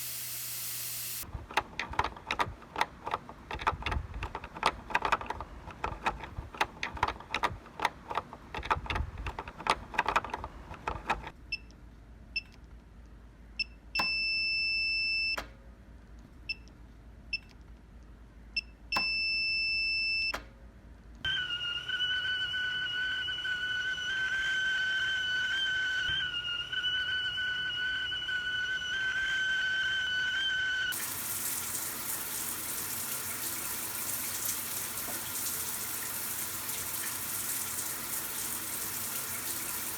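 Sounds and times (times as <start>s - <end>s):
water running from a tap: 0.0s - 1.2s, 30.9s - 39.9s
steady high whistle: 21.3s - 31.0s.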